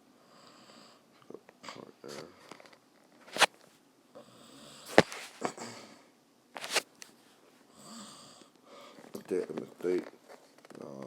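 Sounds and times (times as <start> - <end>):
person breathing and sniffing: 4.8 - 6.0.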